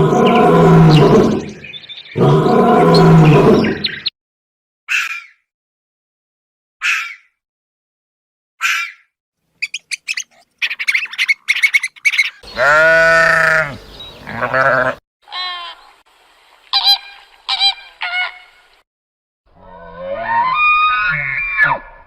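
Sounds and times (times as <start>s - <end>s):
farm animal calls: 9.6s - 15.8s.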